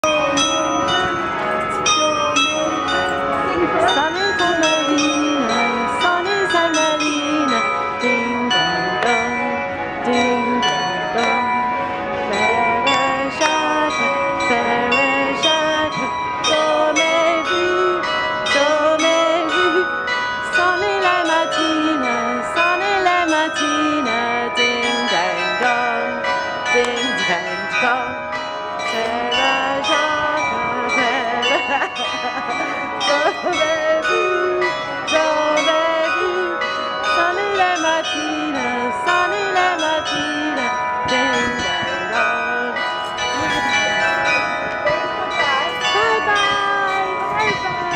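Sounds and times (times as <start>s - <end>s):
bell-like chimes: 0.0s - 47.9s
wavering melody: 0.0s - 47.9s
high voice: 43.2s - 47.9s.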